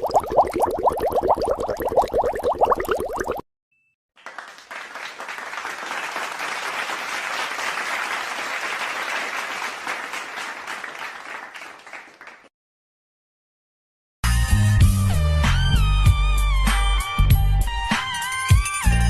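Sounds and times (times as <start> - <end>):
crowd applauding: 4.2 - 12.5.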